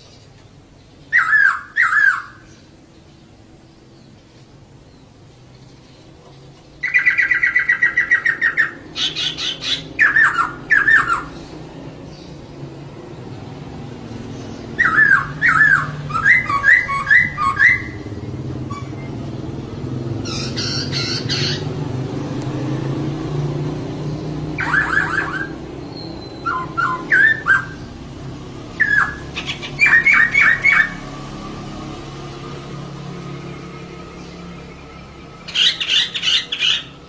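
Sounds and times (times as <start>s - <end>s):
bird calling rapid notes: 1.1s - 2.5s, 6.8s - 11.4s, 14.7s - 19.4s, 20.1s - 21.8s, 24.5s - 27.9s, 28.7s - 31.1s, 35.0s - 37.0s
harsh rasping bird call: 1.1s - 2.7s, 6.8s - 11.6s, 14.7s - 19.0s, 20.2s - 21.8s, 24.5s - 28.0s, 28.7s - 31.1s, 35.4s - 37.0s.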